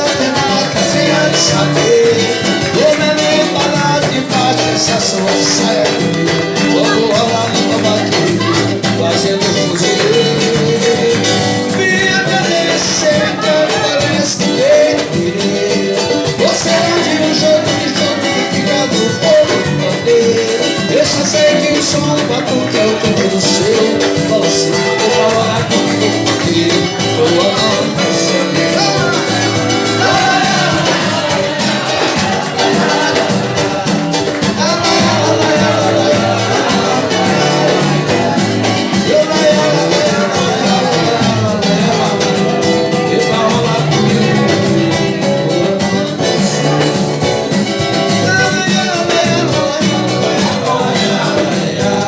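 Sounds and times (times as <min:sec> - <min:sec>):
group singing: 0:00.0 - 0:52.0
percussion beat: 0:00.0 - 0:52.0.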